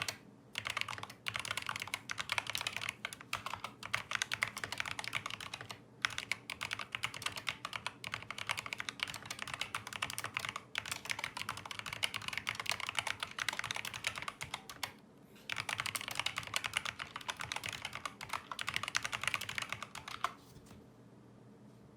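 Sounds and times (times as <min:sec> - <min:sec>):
mechanical keyboard typing: 0:00.0 - 0:20.4.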